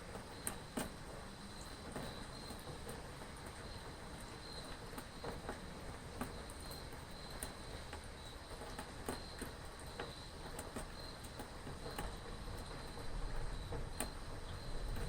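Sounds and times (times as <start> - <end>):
soft rain: 0.0 - 15.0
crickets chirping: 11.0 - 11.2, 12.1 - 15.0.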